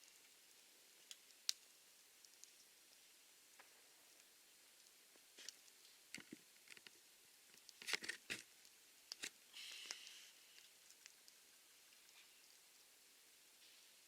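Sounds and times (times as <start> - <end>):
campfire crackling and popping: 0.0 - 14.0
brief hiss: 9.5 - 10.4.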